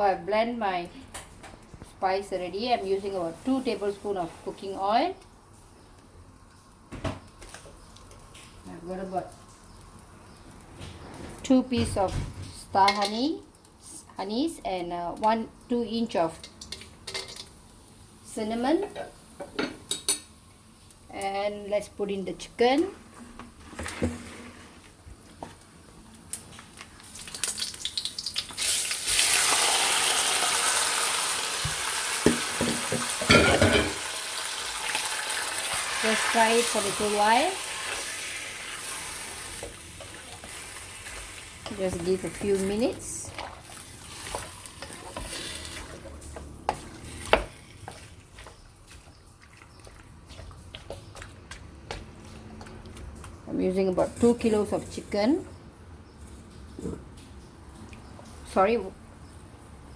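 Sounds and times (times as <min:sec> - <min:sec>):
chicken sizzling in hot oil: 0:26.8 - 0:49.7
stirring clatter in pan: 0:43.3 - 0:52.0.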